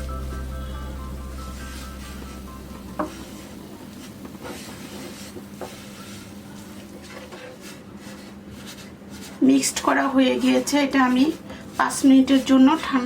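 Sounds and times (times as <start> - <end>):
background music: 0.0 - 3.5
utensil stirring dough in a pan: 1.6 - 13.0.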